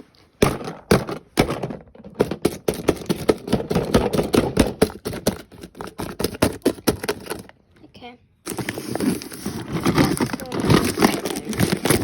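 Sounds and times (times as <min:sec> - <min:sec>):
package rustling: 0:04.8 - 0:07.6, 0:08.5 - 0:12.0.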